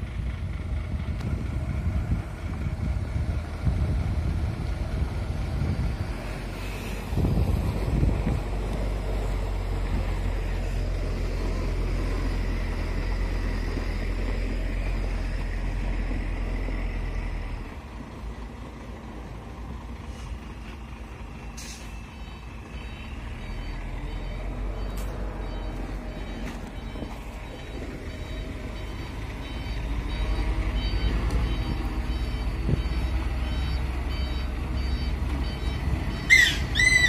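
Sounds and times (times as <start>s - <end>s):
truck diesel engine droning: 0.0s - 37.0s
reversing alarm beeps: 21.6s - 37.0s.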